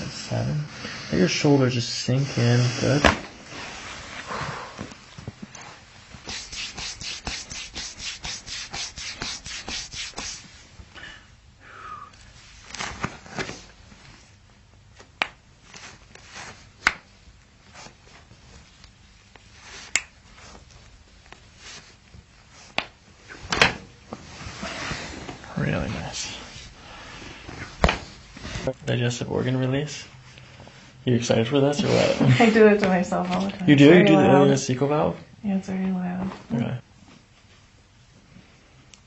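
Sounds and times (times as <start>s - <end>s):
hands rubbing over skin: 6.2s - 10.6s.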